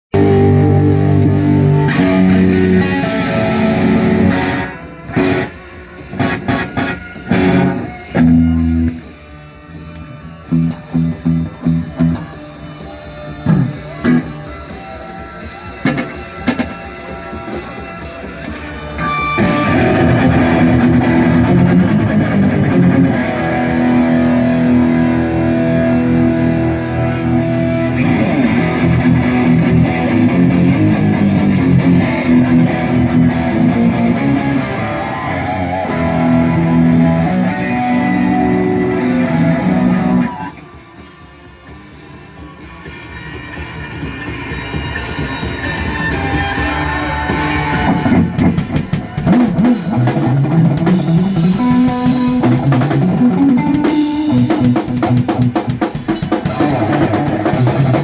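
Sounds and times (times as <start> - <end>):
live band with electric guitar: 0.1 - 58.0.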